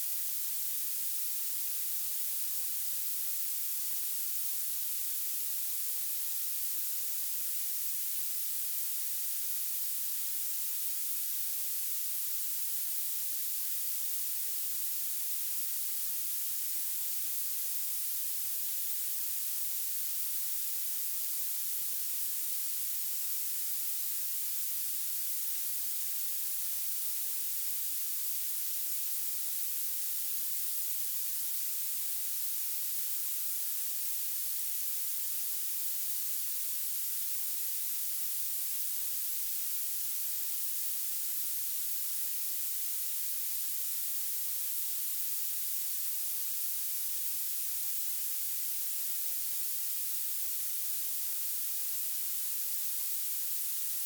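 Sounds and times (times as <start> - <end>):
high-pitched steady hiss: 0.0 - 54.0.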